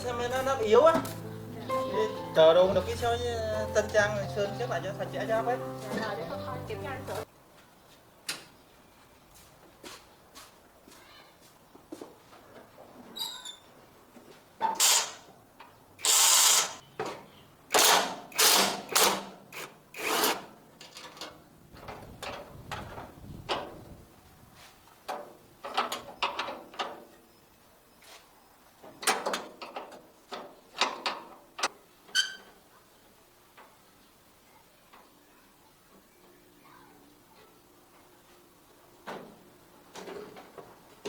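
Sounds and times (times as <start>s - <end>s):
ratchet clicking: 14.8s - 15.2s, 16.0s - 16.8s.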